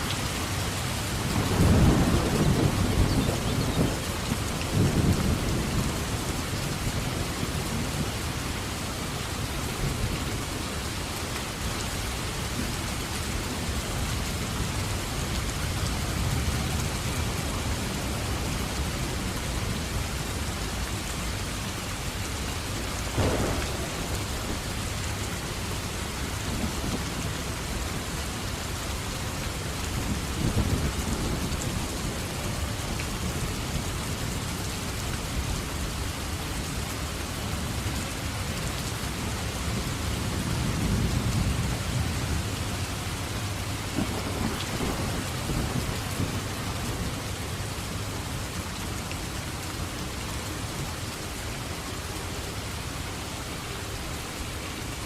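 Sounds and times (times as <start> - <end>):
heavy rain falling: 0.0 - 55.0
thunder rumbling: 1.2 - 8.3, 23.1 - 28.2, 43.6 - 48.6
sharp thunder crack: 23.2 - 25.0.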